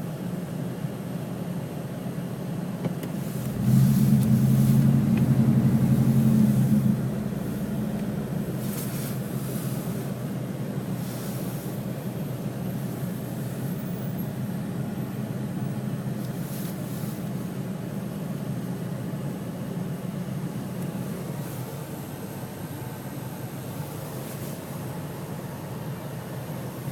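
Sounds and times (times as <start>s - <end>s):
vehicle engine rumbling: 2.6s - 22.4s.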